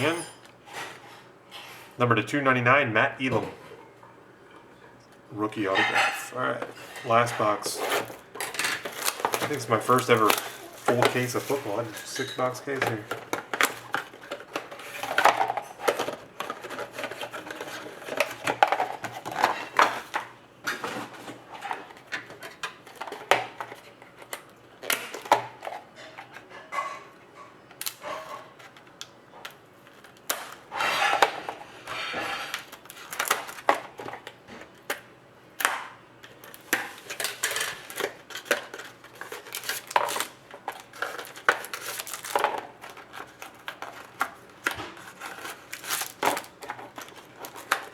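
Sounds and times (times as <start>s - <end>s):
cardboard and plastic wrap rustling: 5.6s - 26.4s, 36.3s - 47.9s.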